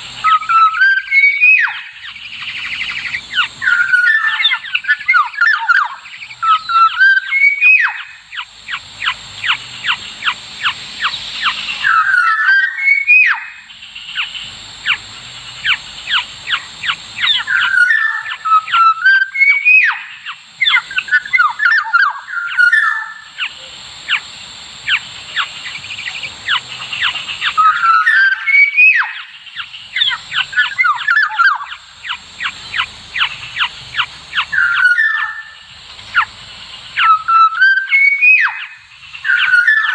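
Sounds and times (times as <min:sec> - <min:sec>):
bird whistled gliding notes: 0:00.2 - 0:15.0, 0:15.6 - 0:24.2, 0:24.9 - 0:36.3, 0:36.9 - 0:39.9
bird harsh chattering: 0:00.2 - 0:24.2, 0:24.8 - 0:39.9.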